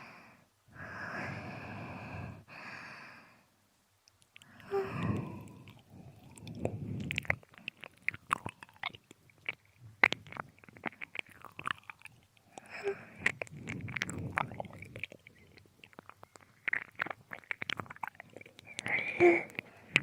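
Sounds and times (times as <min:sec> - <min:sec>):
soft breathy exhale: 0:00.0 - 0:03.5, 0:04.4 - 0:07.1
wet tongue and lip clicks: 0:04.0 - 0:20.0.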